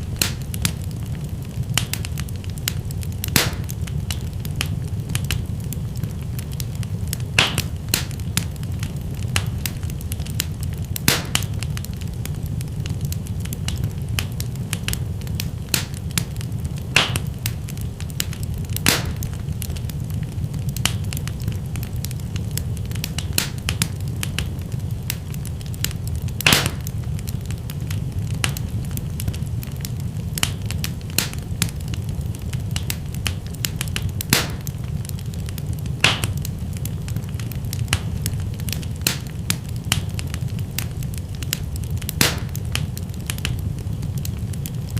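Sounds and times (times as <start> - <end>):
fire crackling: 0.0 - 44.9
sharp pop from fire: 0.2 - 0.8, 1.8 - 5.4, 7.4 - 8.5, 9.3 - 11.8, 15.7 - 16.3, 16.9 - 19.4, 23.1 - 23.9, 26.4 - 27.0, 31.2 - 31.9, 33.8 - 34.7, 36.0 - 36.5, 37.9 - 38.1, 38.7 - 40.2, 42.0 - 43.6.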